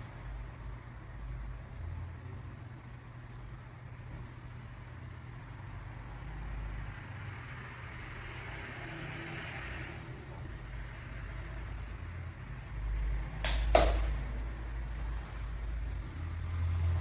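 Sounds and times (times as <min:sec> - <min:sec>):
low mechanical hum: 0:00.0 - 0:17.0.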